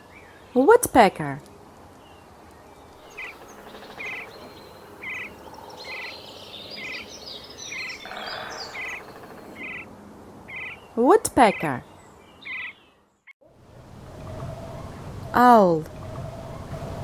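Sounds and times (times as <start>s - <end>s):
small birds chirping: 2.0s - 9.8s, 10.5s - 13.4s
woodpecker calling: 3.0s - 9.9s, 10.5s - 10.9s, 11.5s - 12.9s.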